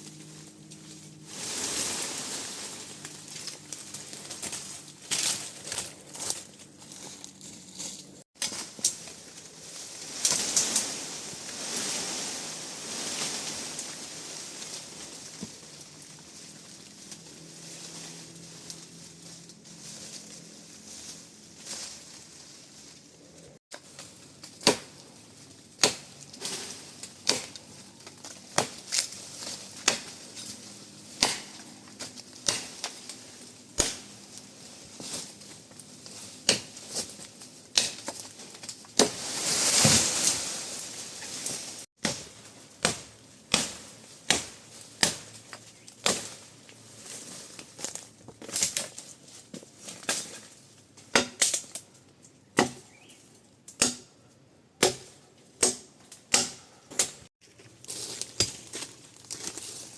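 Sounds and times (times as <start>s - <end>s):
rustling and crackling: 0.0s - 42.9s, 57.1s - 59.9s.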